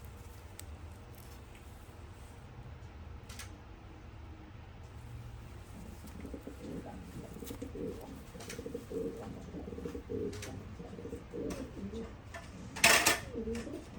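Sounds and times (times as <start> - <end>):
pigeons cooing: 5.2 - 13.9.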